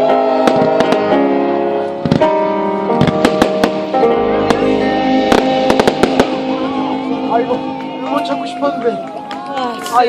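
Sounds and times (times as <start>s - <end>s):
fireworks bangs and cracks: 0.3s - 1.3s, 2.0s - 8.0s.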